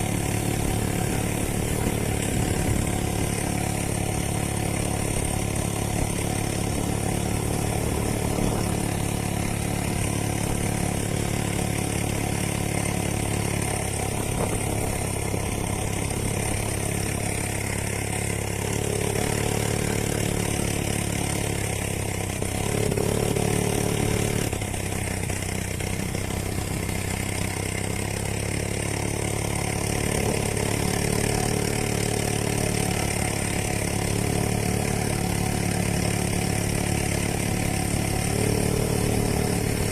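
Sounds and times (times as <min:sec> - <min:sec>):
small two-stroke engine running: 0:00.0 - 0:39.9.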